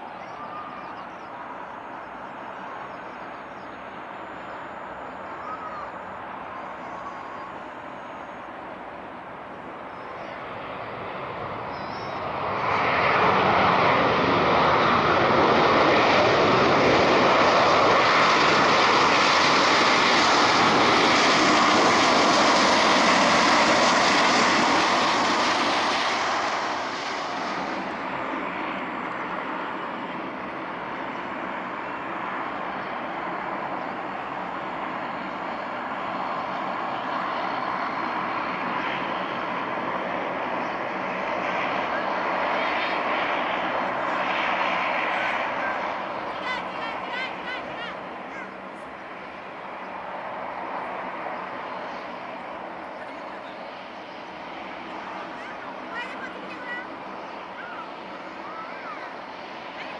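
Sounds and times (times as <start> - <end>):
airliner engines roaring: 0.0 - 59.9.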